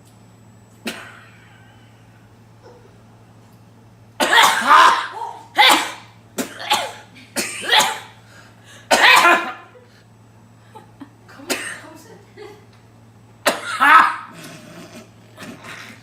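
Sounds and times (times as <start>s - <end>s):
man sneezing loudly: 4.2s - 8.1s, 8.9s - 9.7s, 13.5s - 14.5s.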